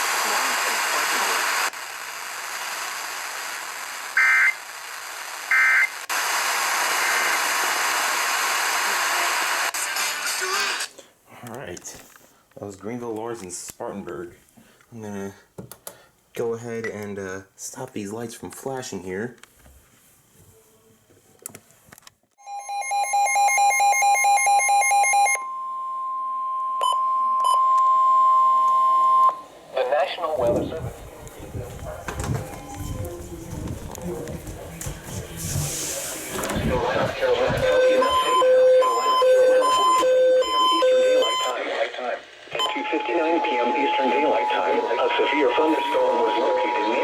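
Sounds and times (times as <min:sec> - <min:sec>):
radio static hissing: 0:00.0 - 0:11.0, 0:29.5 - 0:38.3, 0:39.4 - 0:47.0
steady high alarm tone: 0:22.4 - 0:29.5, 0:32.1 - 0:33.5, 0:37.2 - 0:41.6, 0:42.6 - 0:47.0
rapid beeping: 0:42.6 - 0:47.0.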